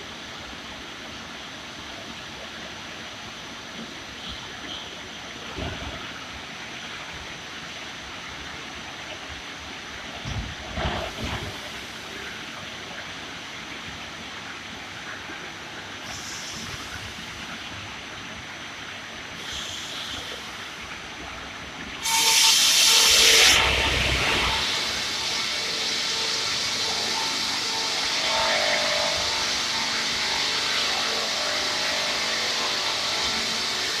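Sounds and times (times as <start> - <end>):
loud high-pitched hissing: 16.0 - 17.5, 19.4 - 20.8, 22.0 - 34.0
sawmill machine running: 22.0 - 34.0.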